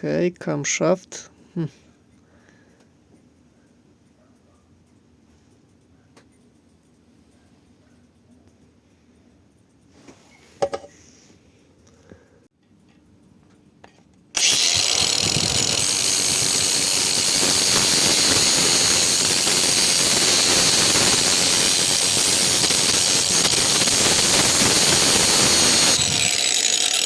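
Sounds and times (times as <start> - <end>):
power tool running: 14.4 - 27.0.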